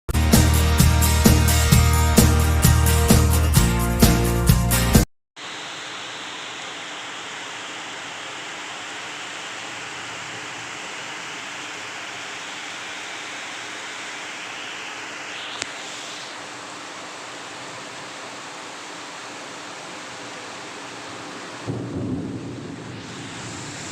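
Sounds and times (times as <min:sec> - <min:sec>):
heavy rain: 0:05.4 - 0:23.9.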